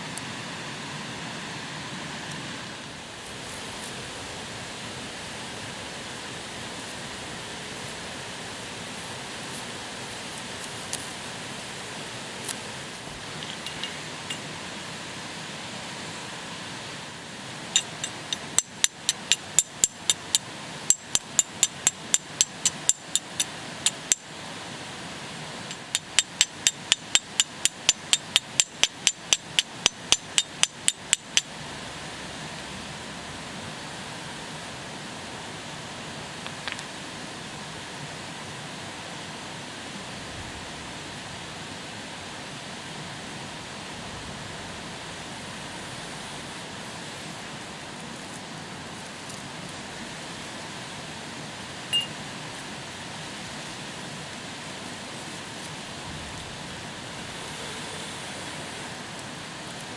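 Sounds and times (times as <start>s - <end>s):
steady hiss: 0.0s - 59.9s
flint and steel clicks: 17.8s - 24.2s.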